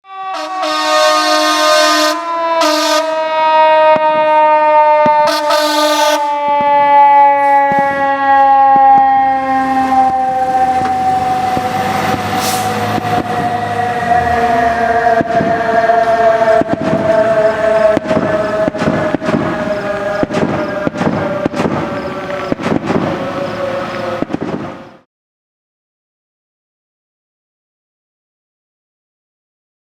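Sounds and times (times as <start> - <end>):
air horn blasts: 0.0 - 11.7, 12.3 - 24.3
mechanical siren winding down: 1.8 - 24.3
truck engine rumbling: 2.2 - 25.0.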